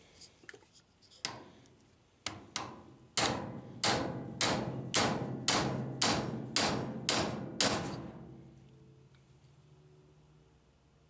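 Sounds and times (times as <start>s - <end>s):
hammer striking metal punch: 2.3s - 8.4s.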